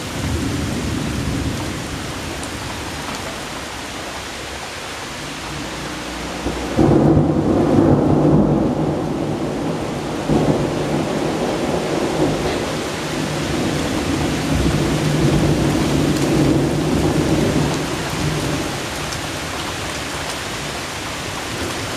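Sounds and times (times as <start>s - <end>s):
thunder rumbling: 0.0s - 3.3s, 6.4s - 19.9s
heavy rain: 0.0s - 21.9s.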